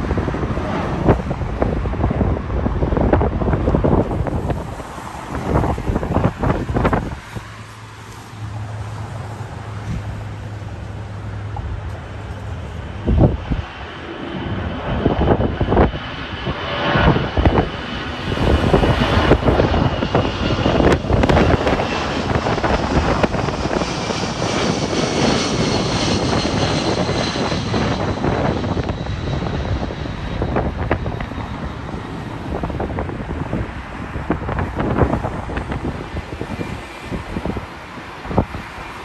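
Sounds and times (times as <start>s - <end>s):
jet engines passing: 0.0s - 39.0s
wind buffeting microphone: 0.0s - 39.0s.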